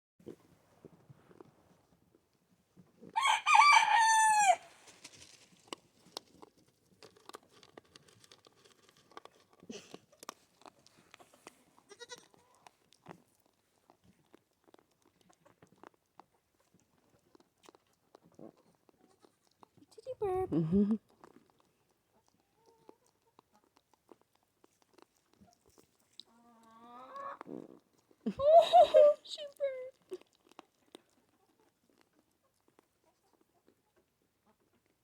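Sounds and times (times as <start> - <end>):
goat kid eating: 0.2 - 3.2, 4.2 - 35.0
wavering farm animal call: 3.2 - 4.8.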